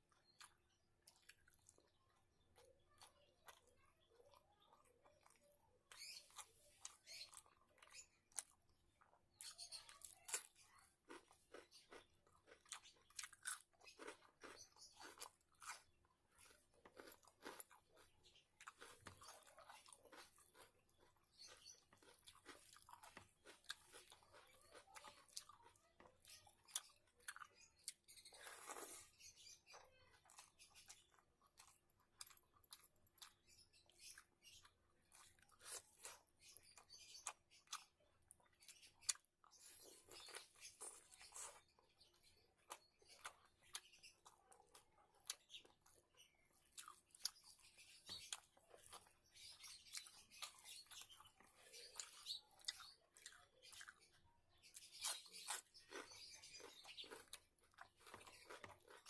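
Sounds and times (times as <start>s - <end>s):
person chewing crunchy food: 2.6s - 59.0s.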